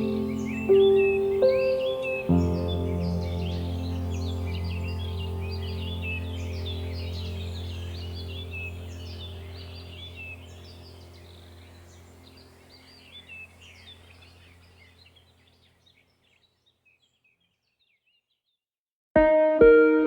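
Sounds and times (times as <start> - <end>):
small birds chirping: 0.0 - 18.6
steady low hum: 2.3 - 15.6.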